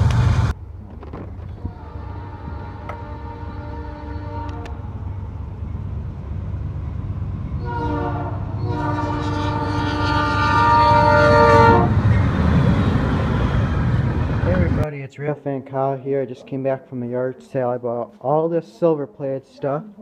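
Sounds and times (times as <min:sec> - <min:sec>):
passing train rumble: 0:00.0 - 0:14.9
locomotive air horn blasts: 0:01.6 - 0:04.8, 0:07.6 - 0:12.0.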